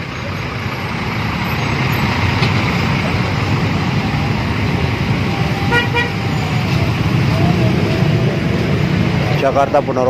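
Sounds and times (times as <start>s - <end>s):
coach engine rumble: 0.0s - 10.0s
road noise: 0.0s - 10.0s
vehicle horn toots: 5.7s - 6.2s.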